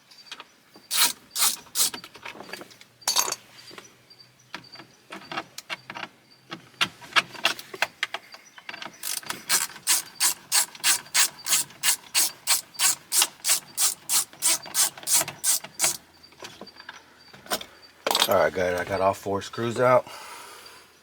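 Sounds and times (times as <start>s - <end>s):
hand ratchet clicking: 0.9s - 2.0s, 9.0s - 16.0s.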